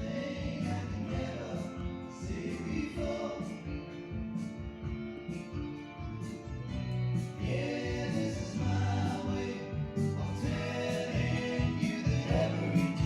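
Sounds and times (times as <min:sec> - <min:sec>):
choir singing held notes: 0:00.0 - 0:03.9, 0:07.4 - 0:13.0.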